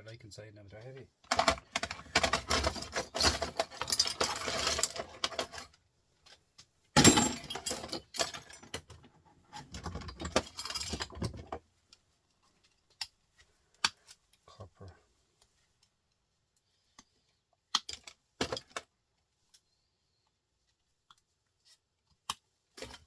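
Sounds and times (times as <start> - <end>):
metal scrap parts clattering: 1.4 - 5.7, 7.0 - 8.7, 9.8 - 11.4.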